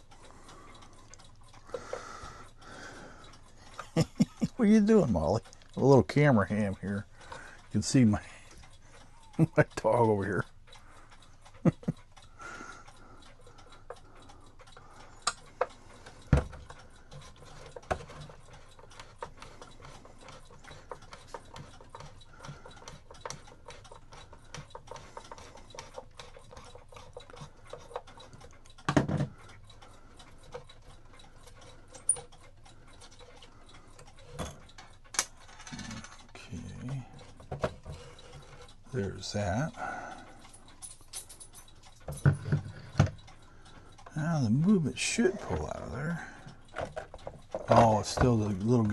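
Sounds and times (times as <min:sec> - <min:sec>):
mechanical clock ticking: 0:00.0 - 0:48.9
knocks and clinks of parts: 0:28.8 - 0:29.3, 0:34.2 - 0:38.7, 0:40.5 - 0:43.2, 0:46.7 - 0:48.4.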